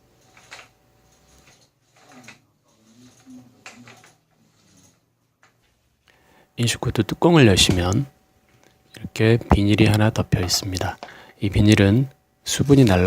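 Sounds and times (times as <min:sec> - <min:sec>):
paint roller swishing on wall: 0:00.0 - 0:06.0.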